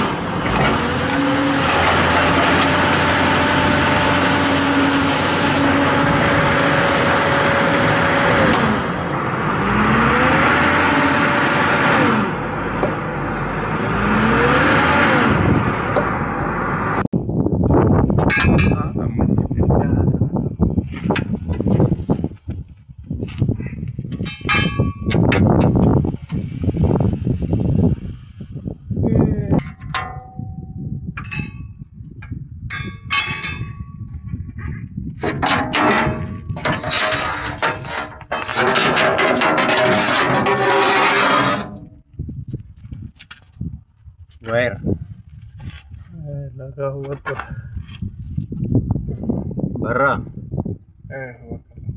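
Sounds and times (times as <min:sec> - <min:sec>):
excavator diesel engine revving: 0:00.0 - 0:17.1, 0:35.2 - 0:42.0
scraping and rattling: 0:00.5 - 0:08.6, 0:31.2 - 0:42.0
low steady rumble: 0:15.2 - 0:47.0
metallic clanks: 0:18.2 - 0:19.0, 0:24.1 - 0:26.4, 0:29.6 - 0:34.0, 0:34.6 - 0:42.0.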